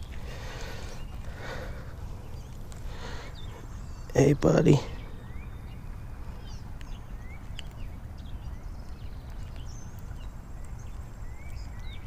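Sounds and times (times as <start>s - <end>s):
birds chirping: 0.0s - 12.0s
steady low rumble: 0.0s - 12.0s
faint clicks: 6.8s - 7.8s.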